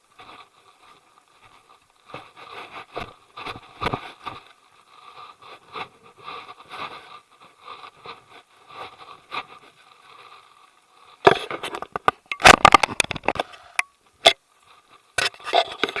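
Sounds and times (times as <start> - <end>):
scraping and clicking near microphone: 11.2 - 16.0.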